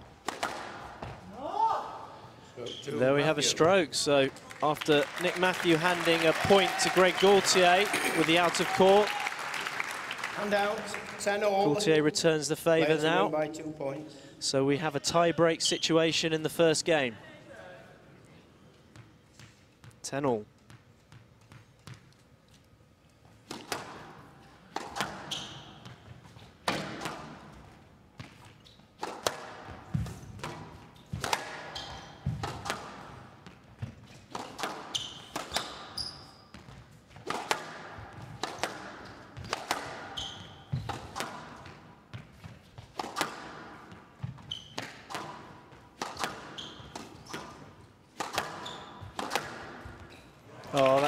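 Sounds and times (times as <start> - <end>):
squash ball hitting rackets and walls: 0.1 - 1.4, 23.4 - 50.2
shoes squeaking on court floor: 2.6 - 3.0, 24.8 - 26.6, 28.2 - 29.2, 29.8 - 37.4, 38.2 - 50.6.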